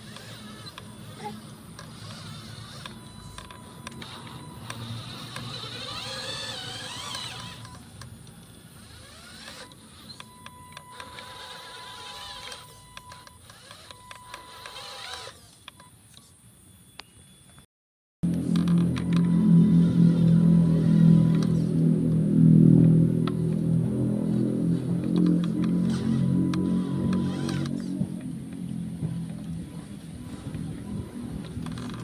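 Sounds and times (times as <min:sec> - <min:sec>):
small electric motor whining: 0:00.0 - 0:16.3, 0:18.2 - 0:32.0
scattered clicks: 0:25.0 - 0:28.7.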